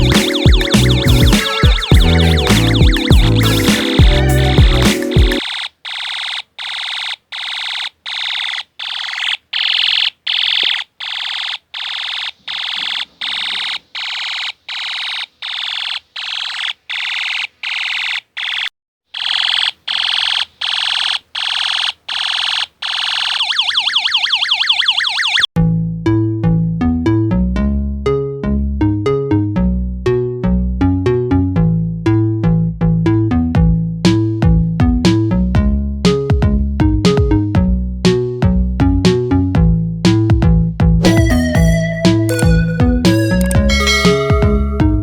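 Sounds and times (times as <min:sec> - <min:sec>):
background music: 0:00.0 - 0:05.4, 0:41.0 - 0:45.0
electronic siren pulses: 0:00.0 - 0:17.2, 0:21.7 - 0:25.5, 0:41.0 - 0:45.0.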